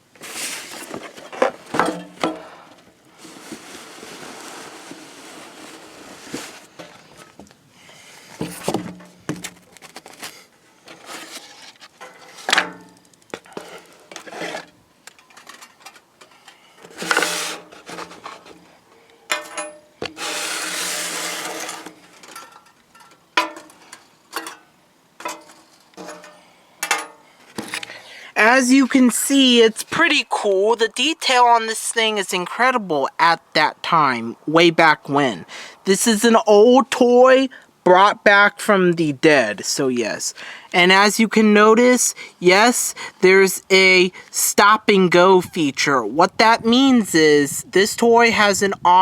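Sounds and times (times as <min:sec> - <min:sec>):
cardboard box rubbing and sliding: 0:00.2 - 0:01.6, 0:03.2 - 0:07.2, 0:20.2 - 0:22.0.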